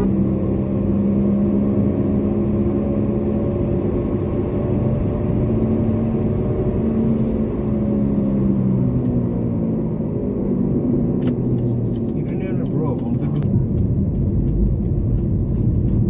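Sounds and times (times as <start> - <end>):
car engine hum: 0.0 - 16.0
tyre and road noise: 11.2 - 16.0.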